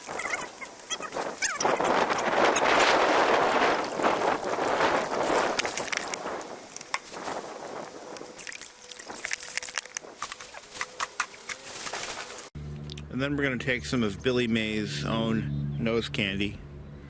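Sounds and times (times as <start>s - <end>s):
water pouring into plastic tub: 8.4s - 9.9s.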